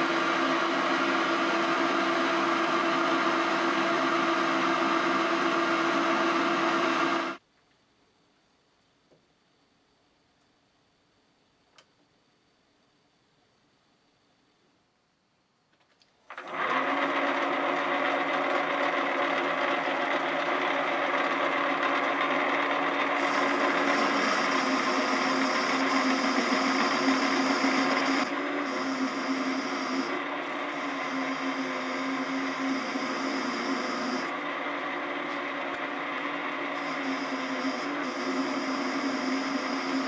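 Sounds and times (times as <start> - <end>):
machine tool motor running: 16.3 - 40.0.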